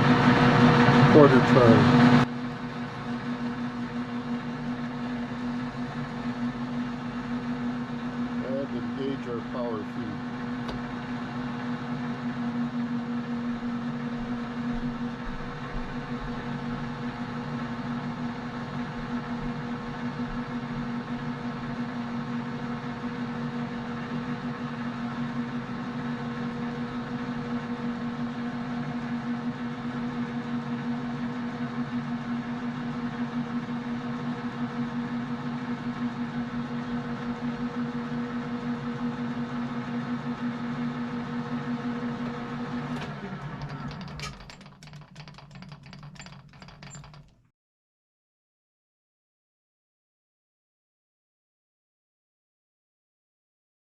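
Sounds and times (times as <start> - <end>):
metal lathe humming: 0.0 - 22.8.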